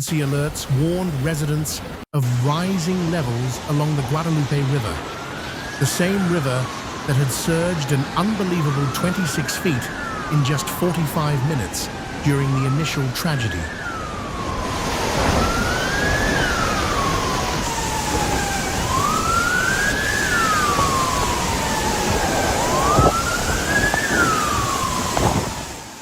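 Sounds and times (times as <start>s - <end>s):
siren wailing: 2.3s - 26.0s.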